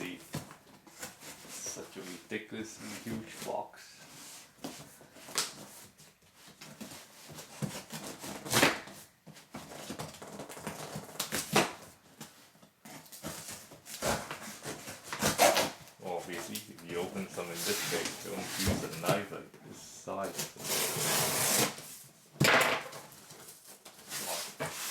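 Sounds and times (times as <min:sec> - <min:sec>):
cardboard and tape rustling: 0:00.0 - 0:24.9
knife cutting cardboard: 0:13.1 - 0:16.4, 0:20.4 - 0:22.0, 0:23.7 - 0:24.9.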